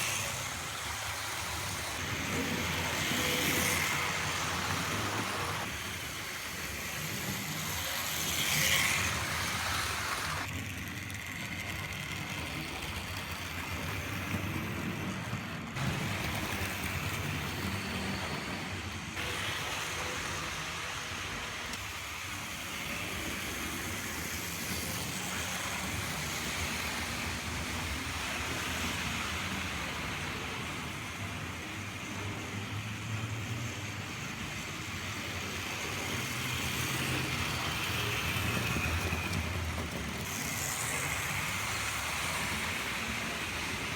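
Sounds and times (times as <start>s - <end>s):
model train rumbling on track: 0.0s - 43.9s.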